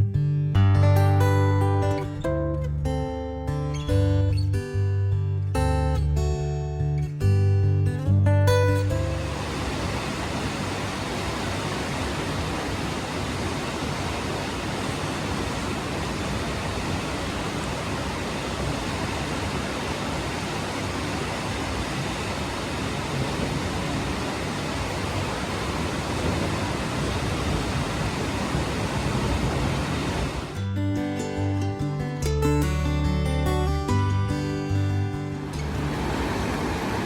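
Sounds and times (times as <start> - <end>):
rush of falling water: 9.0 - 30.6, 35.6 - 37.0.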